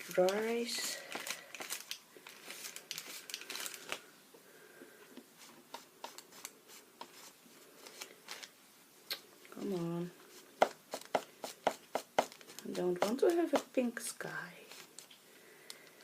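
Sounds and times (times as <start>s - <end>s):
soft rustling and rubbing: 5.3s - 8.5s.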